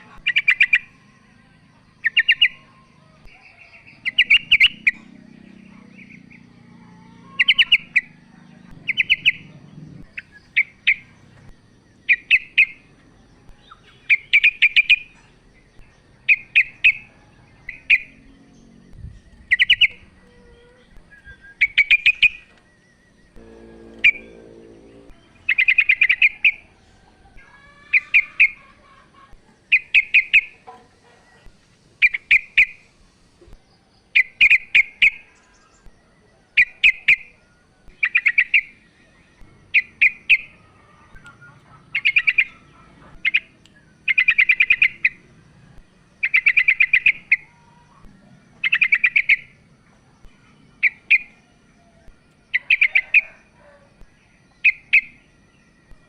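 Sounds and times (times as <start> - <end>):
bird chattering calls: 39.7 - 45.2.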